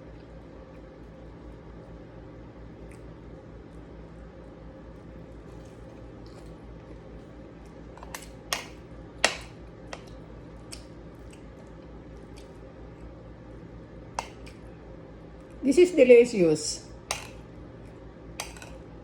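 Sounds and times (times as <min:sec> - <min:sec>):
chewing crunches: 0:05.3 - 0:13.2.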